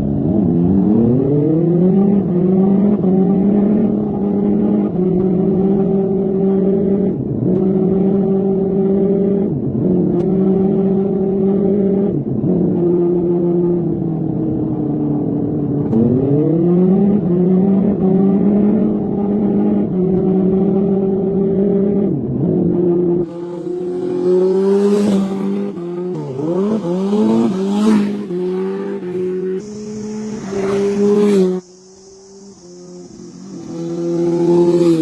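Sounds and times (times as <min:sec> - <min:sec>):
motorcycle engine revving: 0:00.0 - 0:35.0
hiss: 0:23.2 - 0:35.0.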